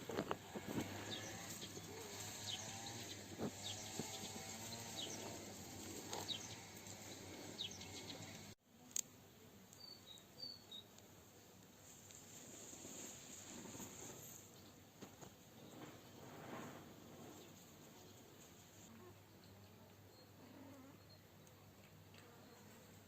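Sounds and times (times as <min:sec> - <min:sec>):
small birds chirping: 0:00.6 - 0:08.6, 0:09.7 - 0:11.0.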